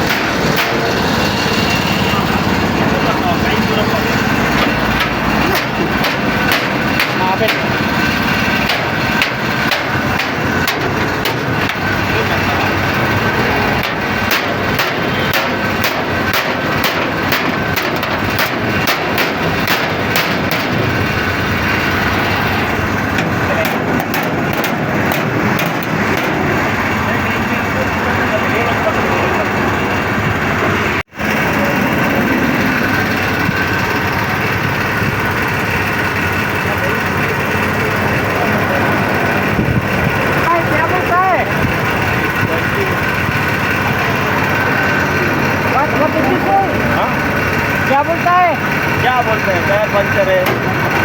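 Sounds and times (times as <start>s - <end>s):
machine running: 0.0s - 51.0s
steady engine noise: 0.0s - 51.0s
sharp even knocks: 4.4s - 12.8s, 13.8s - 26.8s.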